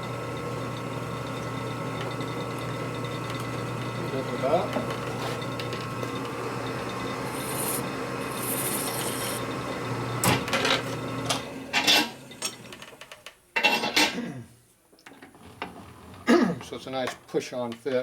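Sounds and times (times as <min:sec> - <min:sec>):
metal lathe humming: 0:00.1 - 0:10.3
file rasping on metal: 0:07.2 - 0:09.4.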